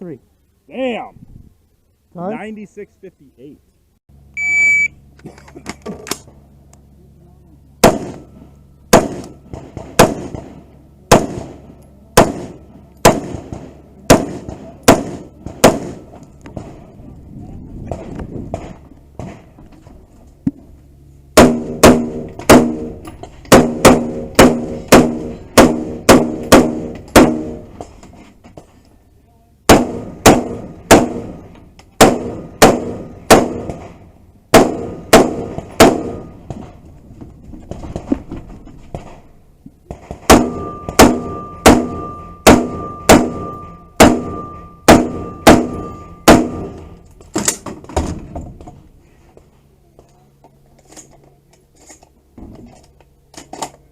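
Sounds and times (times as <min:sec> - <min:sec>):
metallic strikes ringing: 0:40.3 - 0:47.0
higher metallic ring: 0:40.5 - 0:47.0.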